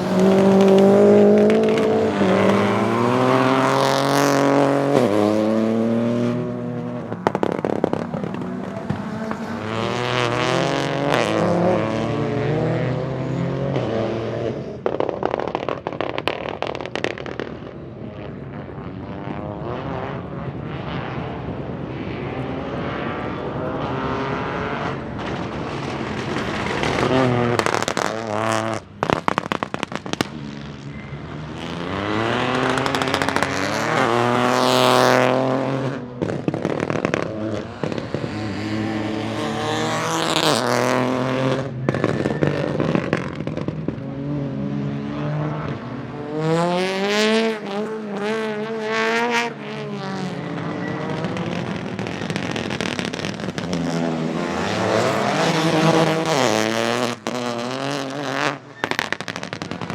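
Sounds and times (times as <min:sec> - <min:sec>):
exhaust pops and crackles: 0:00.0 - 0:11.9, 0:13.8 - 0:20.8, 0:23.8 - 0:44.6, 0:49.2 - 0:59.9
car engine revving hard: 0:00.0 - 0:14.7, 0:31.3 - 0:59.8.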